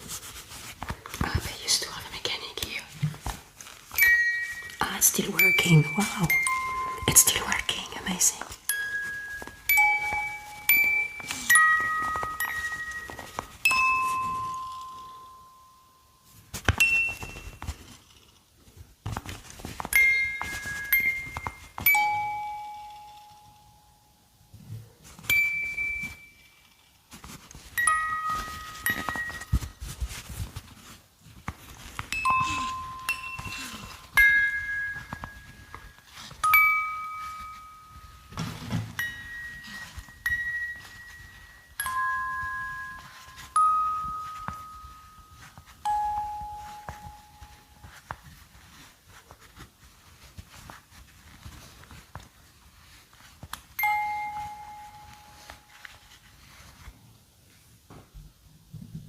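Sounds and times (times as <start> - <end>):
music box ringing notes: 3.9 - 7.8, 8.4 - 17.6, 19.9 - 24.2, 25.3 - 26.8, 27.8 - 29.8, 32.1 - 38.4, 39.0 - 48.0, 53.8 - 56.0
bell-like toy chime: 3.9 - 17.7, 19.9 - 24.3, 25.2 - 26.9, 27.7 - 29.8, 32.1 - 48.0, 53.8 - 56.0.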